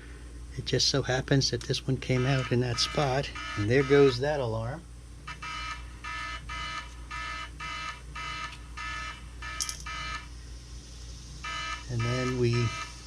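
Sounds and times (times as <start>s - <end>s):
tire-pressure alarm beeping: 2.1s - 4.3s, 5.3s - 10.3s, 11.4s - 13.0s.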